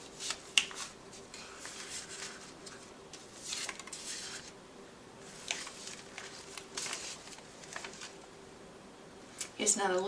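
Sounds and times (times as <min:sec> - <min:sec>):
paper rustling and sliding: 0:00.0 - 0:04.5, 0:05.2 - 0:08.2
faint steady hum: 0:00.0 - 0:10.0.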